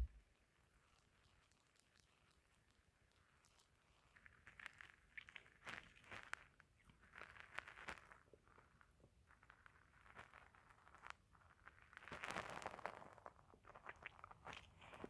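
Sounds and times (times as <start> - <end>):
stomach gurgling: 12.1 - 15.0.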